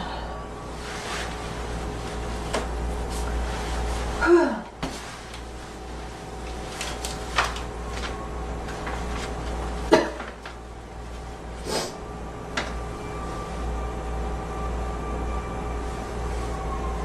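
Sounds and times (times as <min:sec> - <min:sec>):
steady low hum: 0:00.0 - 0:17.0
woman coughing: 0:04.2 - 0:04.7, 0:09.9 - 0:10.3.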